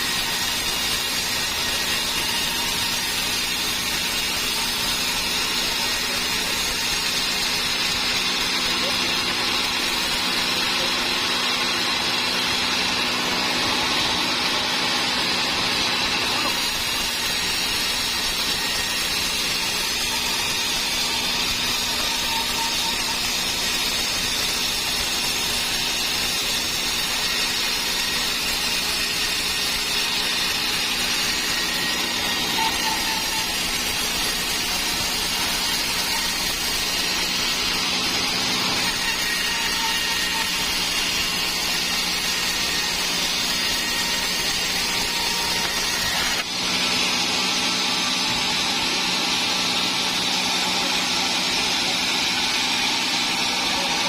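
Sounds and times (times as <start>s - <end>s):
sawmill saw cutting wood: 0.0s - 54.0s.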